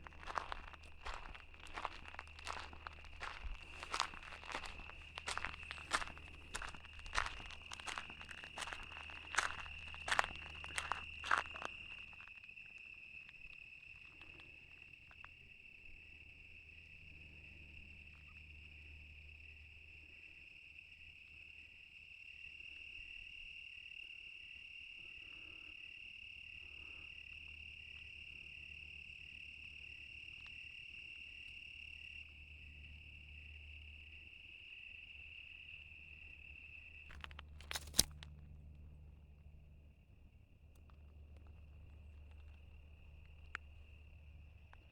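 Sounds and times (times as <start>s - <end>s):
crickets chirping: 0.0s - 44.9s
sharp clicks: 37.1s - 38.3s.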